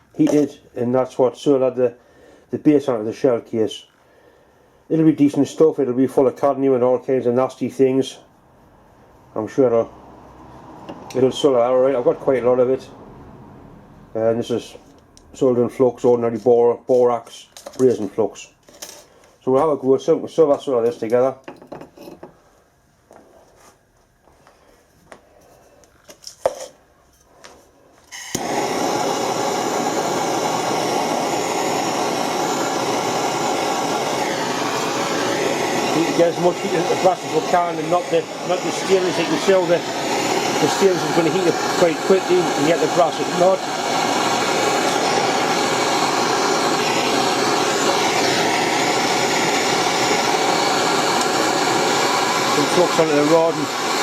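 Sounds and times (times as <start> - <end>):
torch burning with rushing hiss: 28.1 - 54.0
torch ignition click: 28.1 - 54.0.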